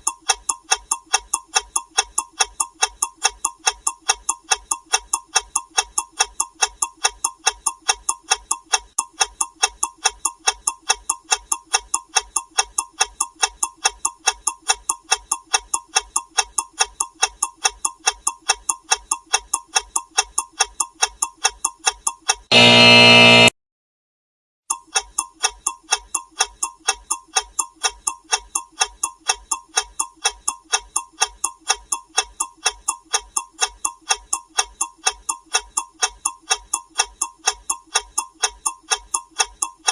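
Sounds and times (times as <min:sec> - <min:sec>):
quick steady ticking: 0:00.0 - 0:23.5, 0:24.7 - 0:39.9
loud alarm buzzer: 0:22.5 - 0:23.5.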